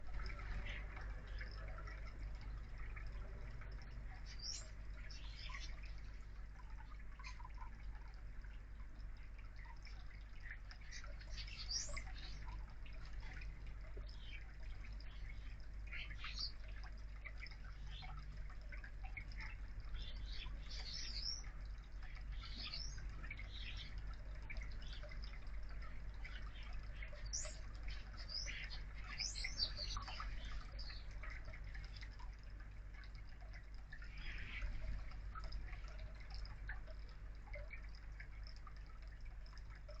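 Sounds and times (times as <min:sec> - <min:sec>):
low electrical hum: 0:00.0 - 0:40.0
birds chirping and whistling: 0:04.3 - 0:05.7, 0:11.3 - 0:12.4, 0:27.2 - 0:31.1.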